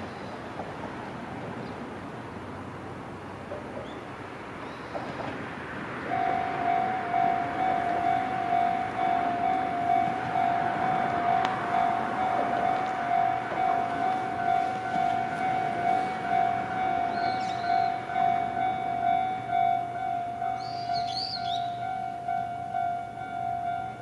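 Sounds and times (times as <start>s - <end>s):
steady background hiss: 0.0s - 24.0s
level-crossing warning bell: 6.0s - 24.0s.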